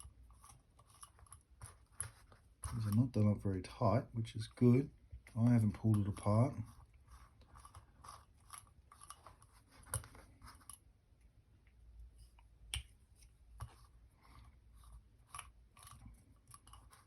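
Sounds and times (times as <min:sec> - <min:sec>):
hand tool clicks and scrapes: 0:00.0 - 0:03.2, 0:05.4 - 0:10.8, 0:15.2 - 0:17.0.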